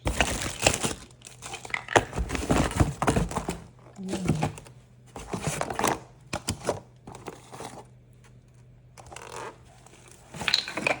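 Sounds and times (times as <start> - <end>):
packaging crinkling: 0.1 - 4.6.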